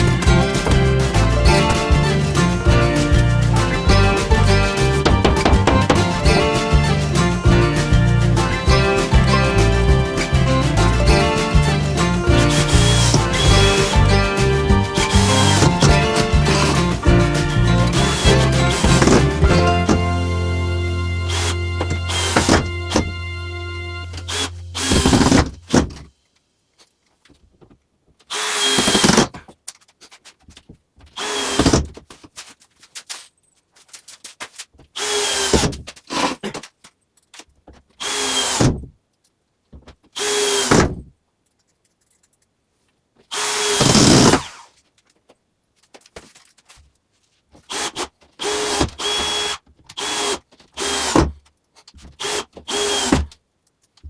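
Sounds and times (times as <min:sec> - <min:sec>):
power drill driving screws into wood: 0:00.0 - 0:03.2, 0:10.2 - 0:14.0, 0:15.0 - 0:20.0, 0:21.3 - 0:23.2, 0:24.1 - 0:26.1, 0:28.3 - 0:29.4, 0:31.1 - 0:32.0, 0:35.0 - 0:35.9, 0:38.0 - 0:38.9, 0:40.1 - 0:41.0, 0:43.3 - 0:44.8, 0:47.6 - 0:51.4, 0:52.1 - 0:53.4.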